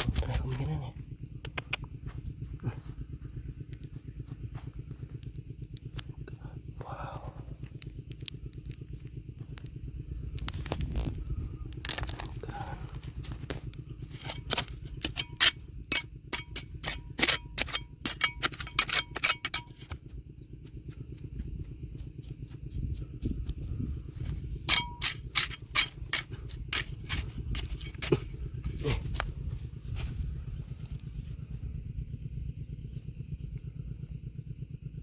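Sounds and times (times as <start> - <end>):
low motor hum: 0.0 - 35.0
metal tool clanking on rocks: 14.0 - 20.0, 24.2 - 29.3.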